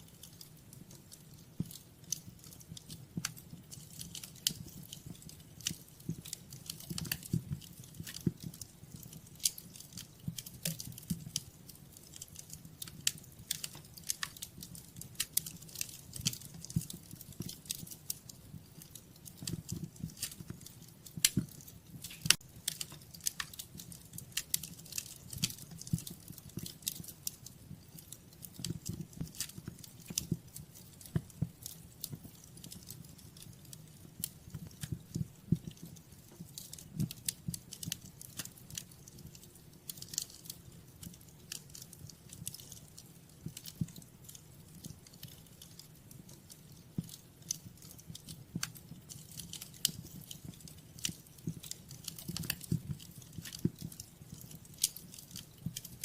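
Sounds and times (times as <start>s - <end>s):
wood fire crackling: 0.0s - 56.0s.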